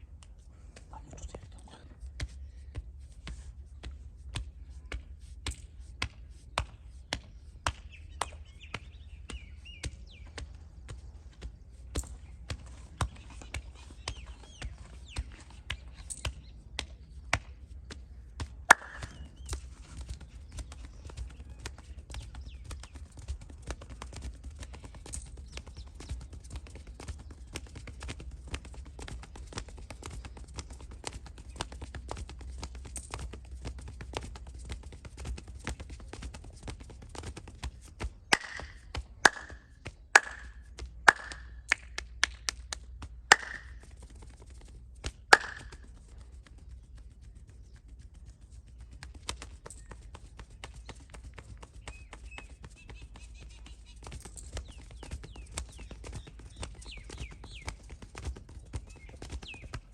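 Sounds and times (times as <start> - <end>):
hands tapping on body: 3.2 - 46.6
sharp hand slaps: 18.7 - 19.2, 38.3 - 39.6, 40.2 - 42.6, 43.3 - 43.7, 45.3 - 45.8.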